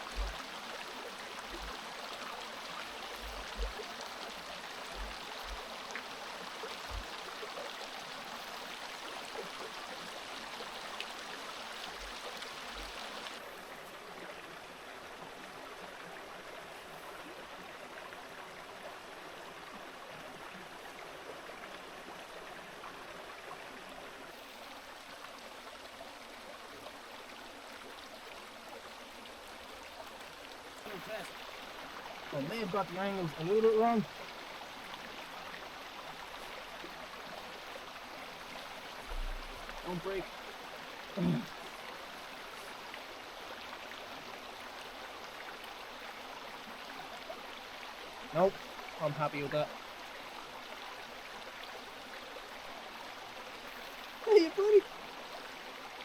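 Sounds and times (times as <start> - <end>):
dull low thumps: 0.0 - 0.4, 3.2 - 3.8, 39.1 - 39.8
river water rushing: 0.0 - 56.0.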